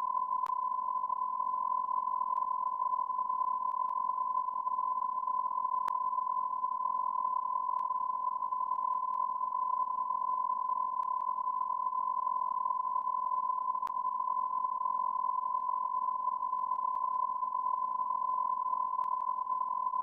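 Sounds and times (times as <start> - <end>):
continuous electronic beep tone: 0.0 - 20.0
faint clicks: 19.0 - 19.3.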